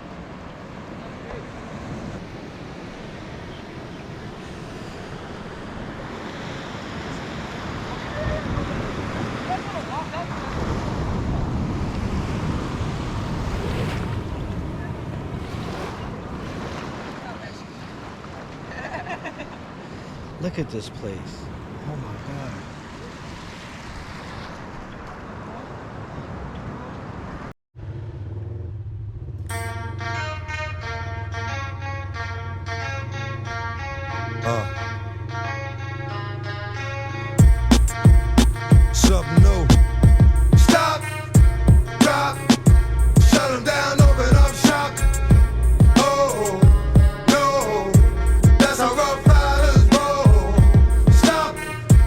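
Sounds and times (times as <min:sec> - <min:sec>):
wind buffeting microphone: 0:00.0 - 0:18.6
ocean surf rushing: 0:00.0 - 0:27.5, 0:36.8 - 0:52.0
wind: 0:00.0 - 0:52.0
atv engine droning: 0:27.8 - 0:52.0
music: 0:29.5 - 0:52.0.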